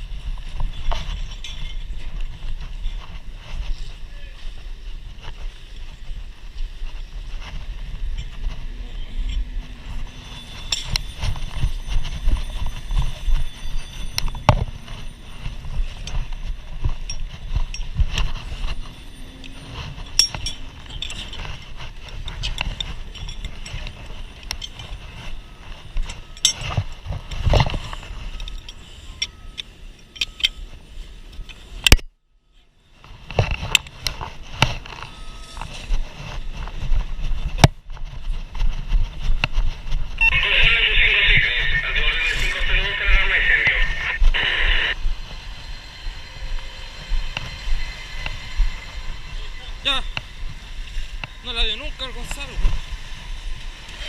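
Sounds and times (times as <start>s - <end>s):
wind buffeting microphone: 0.0s - 28.7s
metal equipment clinking: 9.0s - 30.7s.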